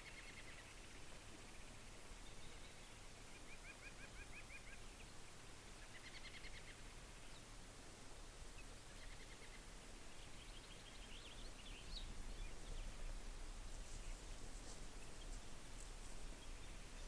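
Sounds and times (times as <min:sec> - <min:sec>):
faint bird calls: 0:00.0 - 0:07.4
low background noise: 0:00.0 - 0:17.0.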